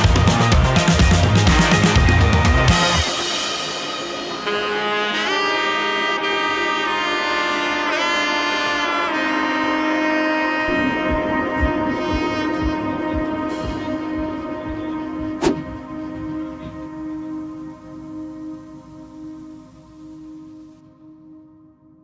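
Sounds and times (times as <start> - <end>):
light beat: 11.0 - 16.9.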